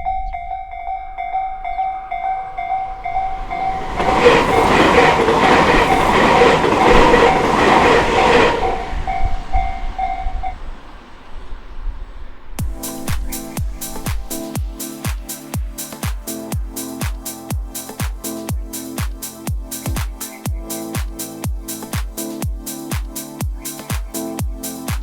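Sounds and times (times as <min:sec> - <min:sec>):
level crossing bell ringing: 0:00.0 - 0:03.8
train wheels clacking on rails: 0:01.8 - 0:11.1.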